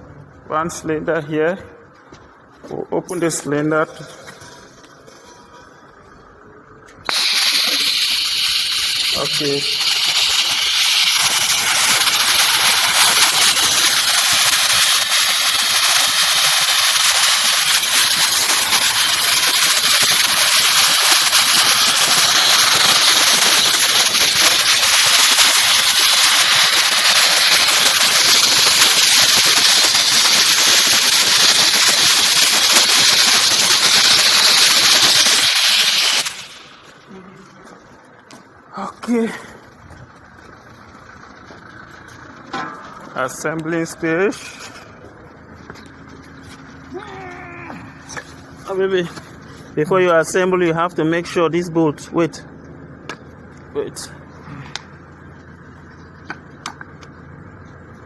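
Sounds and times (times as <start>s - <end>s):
compressed air blast hissing: 7.0s - 37.0s.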